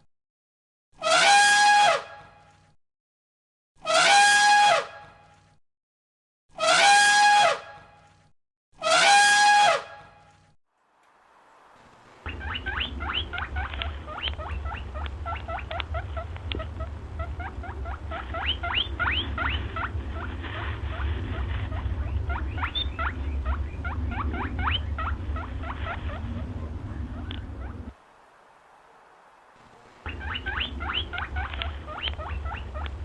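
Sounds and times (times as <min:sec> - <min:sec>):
low rumble: 0:10.8 - 0:33.0
small rodents squeaking: 0:11.9 - 0:28.0, 0:29.6 - 0:33.0.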